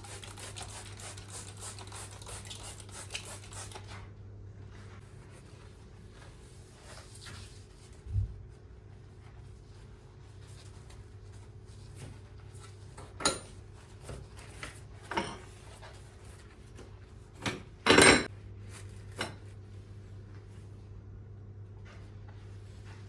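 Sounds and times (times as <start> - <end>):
low appliance hum: 0.0 - 23.0
kitchenware clattering: 17.5 - 18.3.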